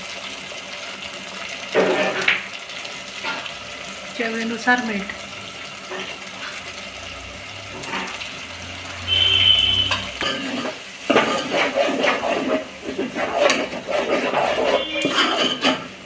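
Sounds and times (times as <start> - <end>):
oil sizzling: 0.0 - 16.0
spoon stirring and scraping pan: 1.6 - 3.9, 5.1 - 6.8, 7.6 - 16.0.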